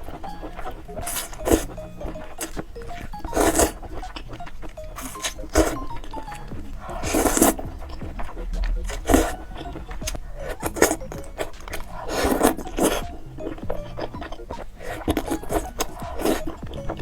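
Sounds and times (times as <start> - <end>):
food chewing and crunching: 0.0 - 17.0.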